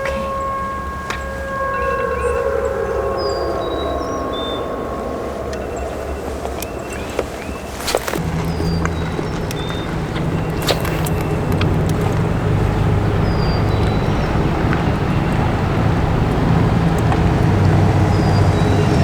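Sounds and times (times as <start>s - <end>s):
bird chirps: 0.0s - 19.0s
vehicle engine droning: 0.0s - 19.0s.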